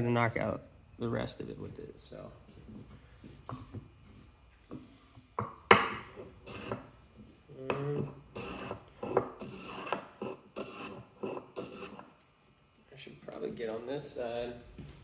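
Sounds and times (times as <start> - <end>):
hand plane scraping wood: 6.2 - 6.9, 8.0 - 12.1.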